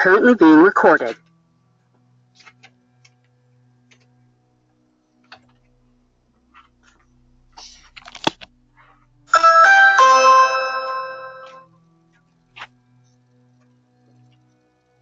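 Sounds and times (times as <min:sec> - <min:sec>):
doorbell chime: 0:09.3 - 0:11.6.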